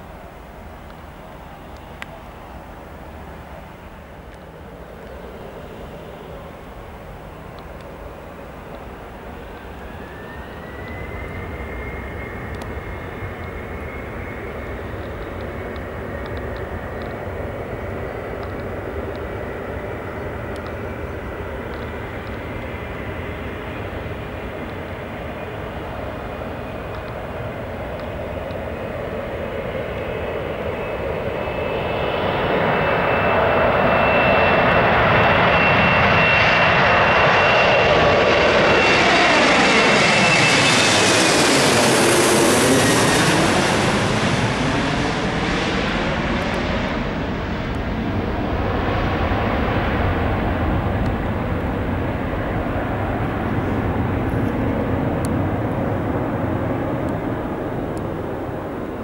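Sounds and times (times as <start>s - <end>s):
jet engine whine: 0.0s - 59.0s
jet engines roaring: 0.0s - 59.0s.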